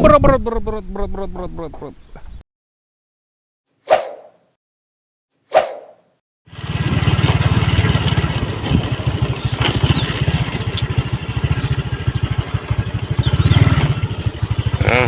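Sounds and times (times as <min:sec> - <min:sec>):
small motorcycle engine running: 0:06.5 - 0:15.0.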